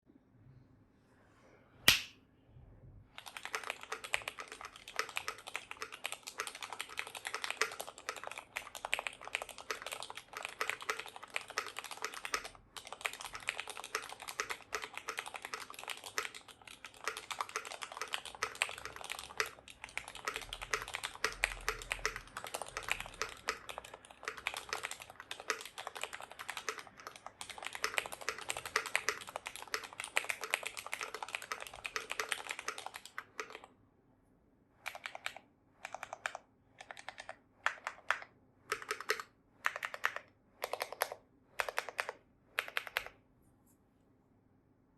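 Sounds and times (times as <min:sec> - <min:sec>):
sharp click: 0:01.9 - 0:02.2
fast mechanical keyboard typing: 0:03.1 - 0:33.7, 0:34.8 - 0:43.2.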